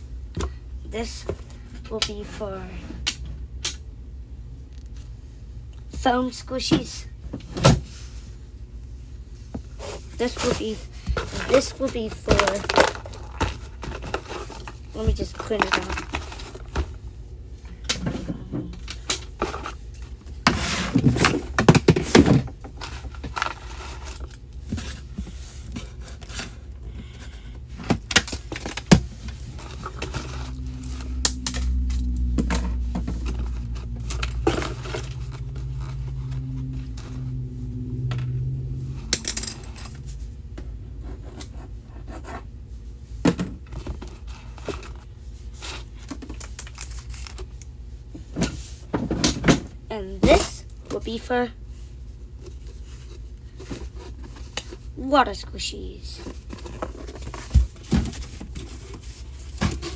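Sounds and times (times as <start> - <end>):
low hum: 28.4 - 42.0.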